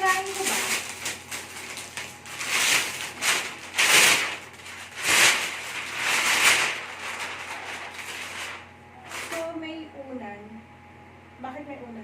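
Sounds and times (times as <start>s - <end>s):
packaging ripping and crinkling: 0.0s - 9.5s.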